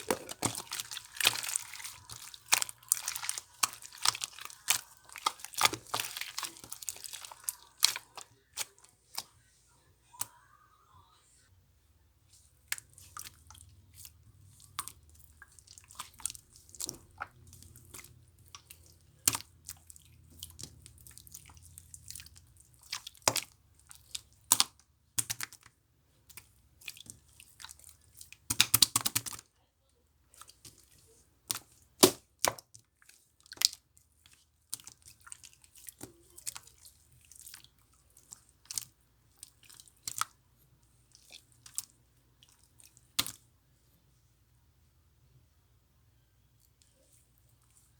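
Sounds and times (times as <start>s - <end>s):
slime clicking and popping: 0.0s - 8.7s, 28.4s - 29.4s.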